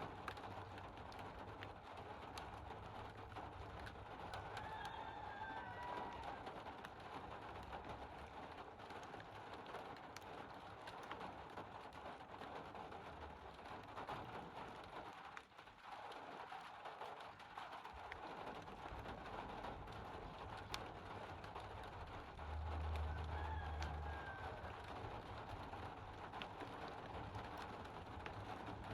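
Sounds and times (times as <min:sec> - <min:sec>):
rain hissing: 0:17.9 - 0:28.9.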